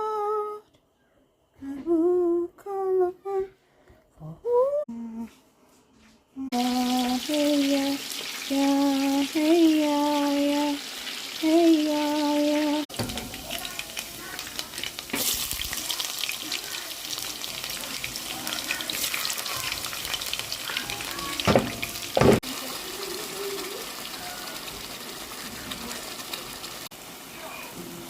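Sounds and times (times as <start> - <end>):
food frying in hot oil: 6.5 - 28.0
loud knocks: 21.5 - 22.4.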